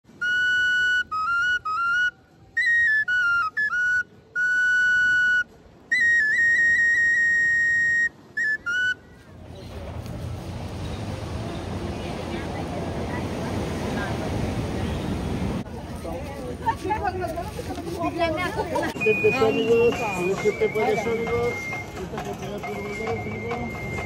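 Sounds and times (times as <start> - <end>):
high whistle-like tune: 0.1 - 9.1, 19.0 - 24.0.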